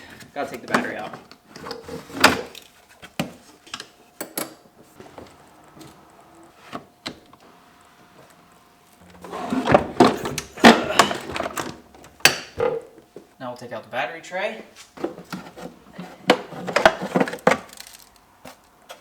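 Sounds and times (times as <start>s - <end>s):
metal parts clattering: 17.1s - 18.2s.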